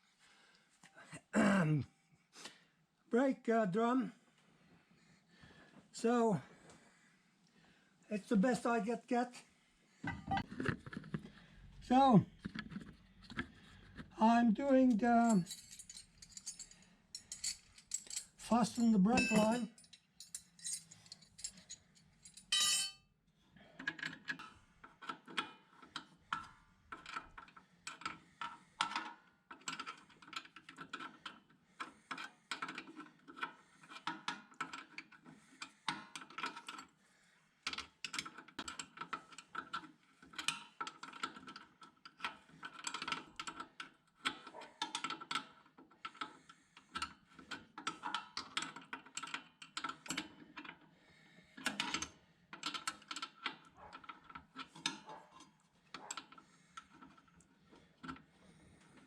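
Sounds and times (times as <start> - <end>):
metal tool clatter: 15.2 - 23.0.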